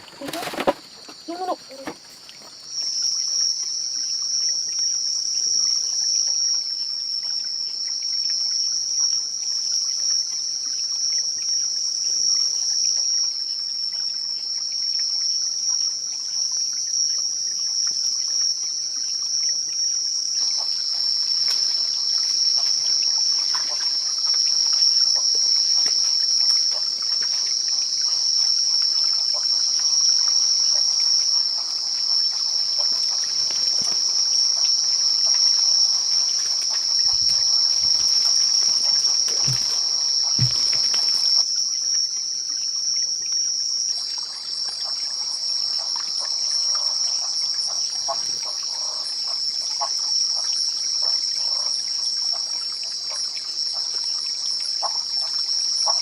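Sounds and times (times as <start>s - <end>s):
insects chirring: 0.0s - 56.0s.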